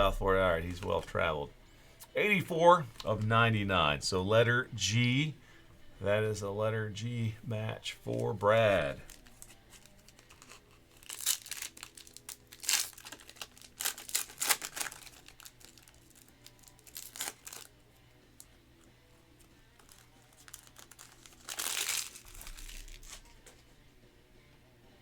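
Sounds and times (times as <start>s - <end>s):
wrappers crinkling and tearing: 8.0s - 18.5s, 19.4s - 23.6s.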